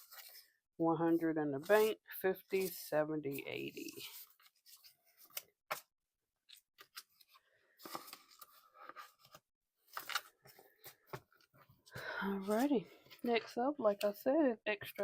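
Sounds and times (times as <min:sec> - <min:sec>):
paper money rustling: 0:00.0 - 0:11.2.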